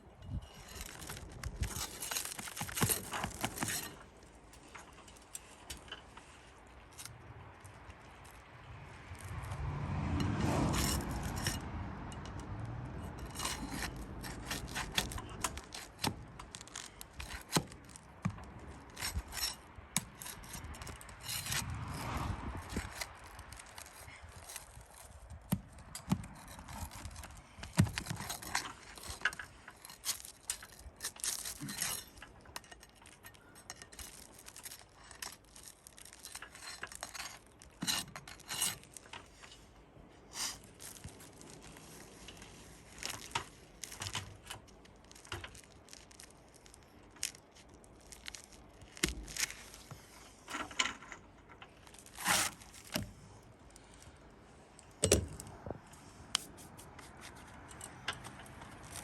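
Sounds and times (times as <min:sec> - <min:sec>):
roof shingle scraping and tearing: 0:00.0 - 0:59.0
nails pried out: 0:54.9 - 0:55.8
sharp clicks and knocks: 0:55.0 - 0:59.0.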